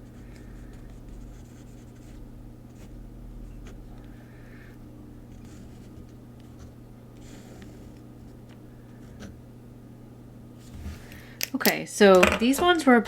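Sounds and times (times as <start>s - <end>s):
scratching on paper: 0.0s - 3.9s, 5.3s - 9.3s.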